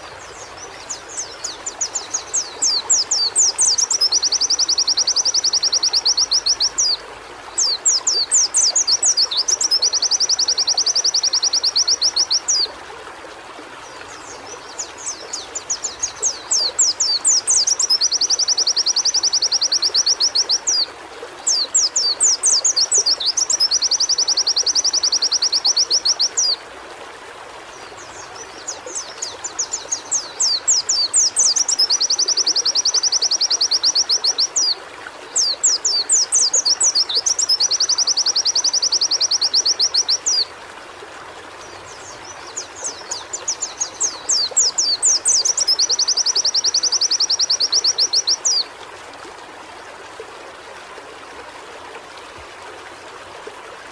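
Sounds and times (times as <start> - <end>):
flowing water rushing: 0.0 - 53.9
bird singing rapid high trills: 35.4 - 40.5, 41.8 - 48.6.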